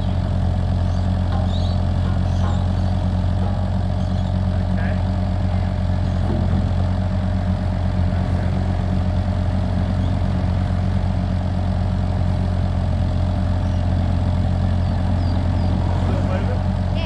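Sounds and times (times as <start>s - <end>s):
diesel engine idling: 0.0s - 17.0s.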